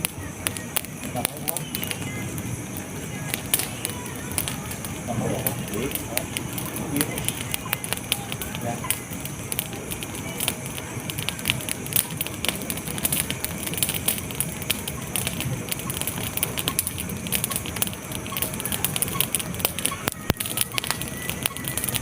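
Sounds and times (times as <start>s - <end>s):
crackling and sharp clicks: 0.0s - 22.0s
low rumble: 0.0s - 22.0s.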